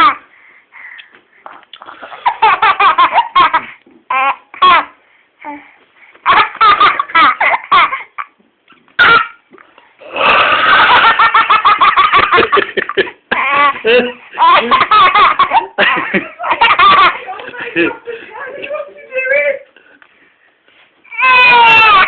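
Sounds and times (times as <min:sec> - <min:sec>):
baby laughing: 0:02.1 - 0:05.0, 0:06.2 - 0:08.4, 0:09.0 - 0:09.4, 0:10.5 - 0:17.6.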